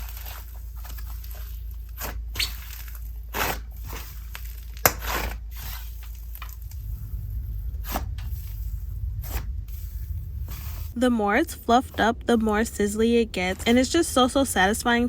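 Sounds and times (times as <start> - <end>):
slime squishing: 0.0 - 11.0.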